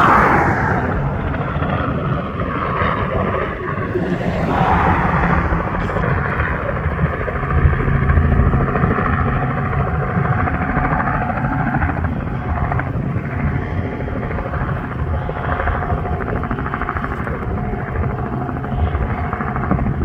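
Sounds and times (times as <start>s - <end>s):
piston engine drone: 0.0s - 9.0s.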